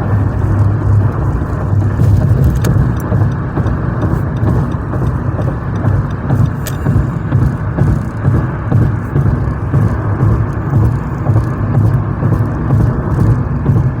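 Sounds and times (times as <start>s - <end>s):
car road and engine rumble: 0.0s - 14.0s.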